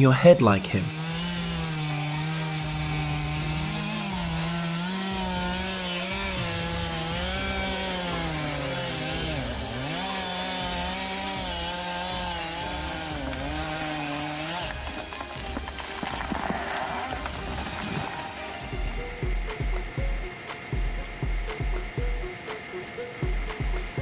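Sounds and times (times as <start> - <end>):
chainsaw cutting wood: 0.4 - 19.2.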